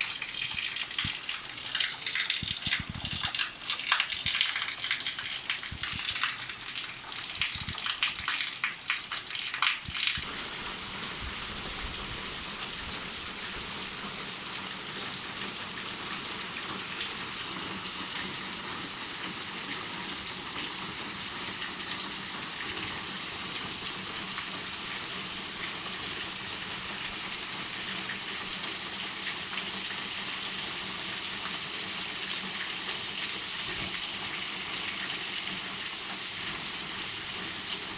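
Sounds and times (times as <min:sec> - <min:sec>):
loud raindrops splashing: 0:07.3 - 0:18.4
steady rain hiss: 0:10.2 - 0:37.9.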